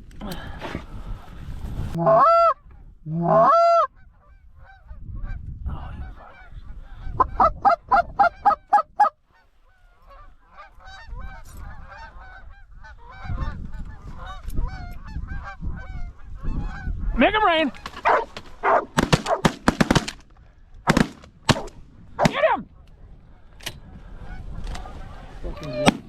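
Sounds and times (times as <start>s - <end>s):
flock of geese honking: 3.3s - 17.2s
goose clucking: 17.8s - 20.2s.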